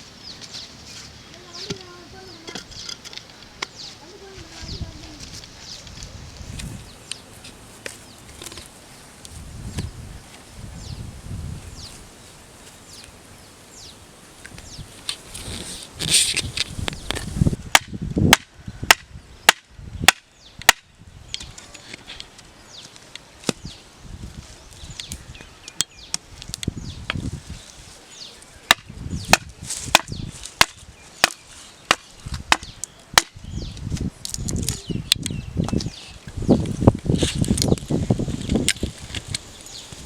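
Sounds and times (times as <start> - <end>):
blade chopping wood: 28.7 - 33.4.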